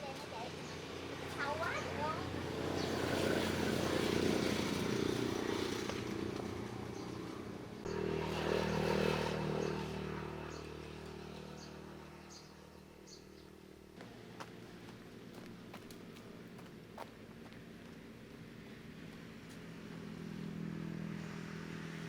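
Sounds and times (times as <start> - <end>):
vehicle engine running: 0.0 - 22.0.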